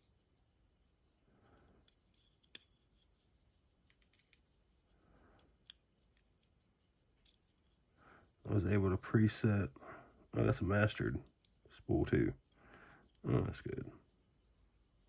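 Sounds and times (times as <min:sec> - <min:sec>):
metallic clicks of lock parts: 0:01.8 - 0:03.2.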